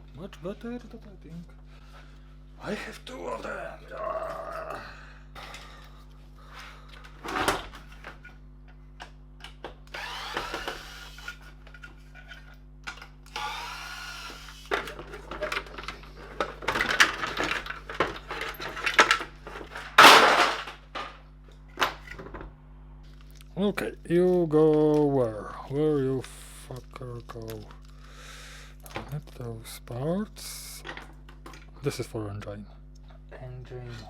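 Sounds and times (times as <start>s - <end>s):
faint steady hum: 0.0s - 34.0s
metal and plastic parts rattling: 14.7s - 21.2s, 30.8s - 31.7s.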